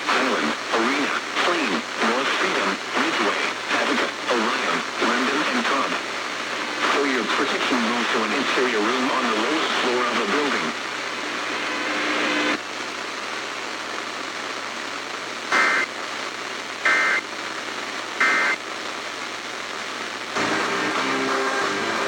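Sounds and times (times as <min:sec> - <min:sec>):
music on radio: 0:00.0 - 0:22.0
radio static hiss: 0:00.0 - 0:22.0
two-tone digital data bursts: 0:15.6 - 0:15.9, 0:16.9 - 0:17.2, 0:18.2 - 0:18.6.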